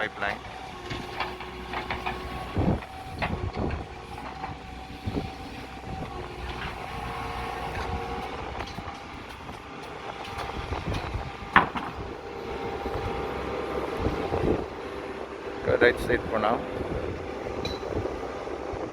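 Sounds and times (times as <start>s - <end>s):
steady mechanical hum: 0.0s - 18.9s
metal knocks and clanks: 0.3s - 6.8s, 7.5s - 12.0s.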